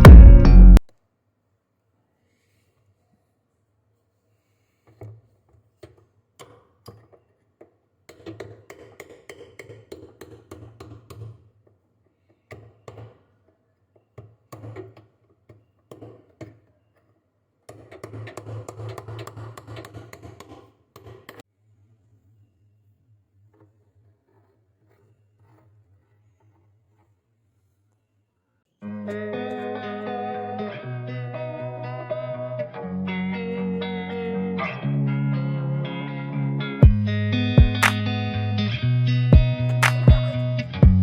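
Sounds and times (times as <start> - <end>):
taps and clicks: 37.6 - 38.0, 39.4 - 41.0.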